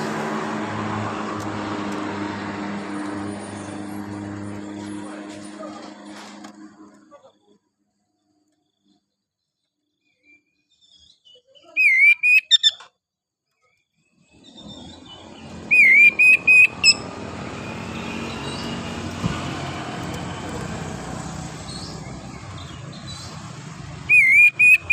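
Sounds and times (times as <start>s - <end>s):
bird whistled phrase: 11.2s - 12.8s, 15.7s - 17.0s, 24.1s - 24.9s.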